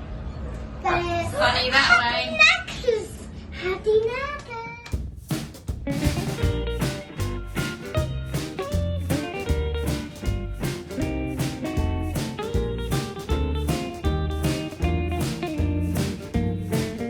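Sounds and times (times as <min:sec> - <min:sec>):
upbeat guitar-led music: 0:05.3 - 0:17.0.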